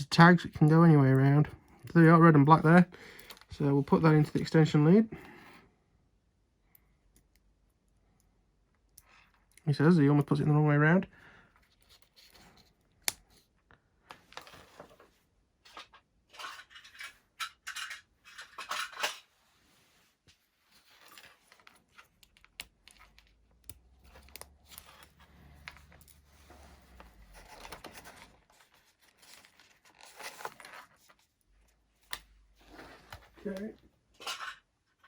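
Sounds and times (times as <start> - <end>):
wires and connectors being handled: 0.0 - 5.4, 7.0 - 19.4, 20.2 - 35.0.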